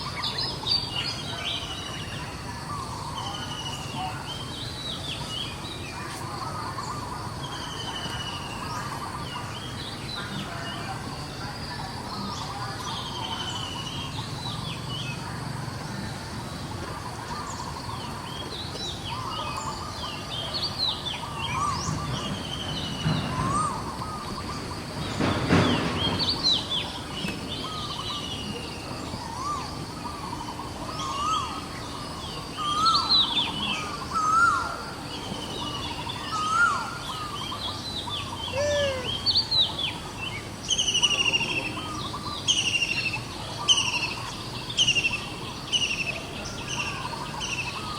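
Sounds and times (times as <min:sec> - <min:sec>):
steady background noise: 0:00.0 - 0:47.9
high bird chirping: 0:21.2 - 0:40.0.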